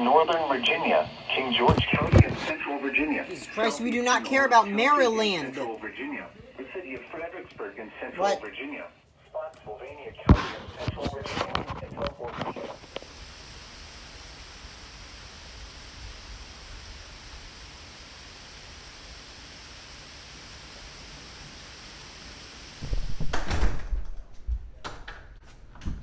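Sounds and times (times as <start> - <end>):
faint steady hiss: 0.0 - 26.0
loud thumps with low rumble: 22.8 - 24.8.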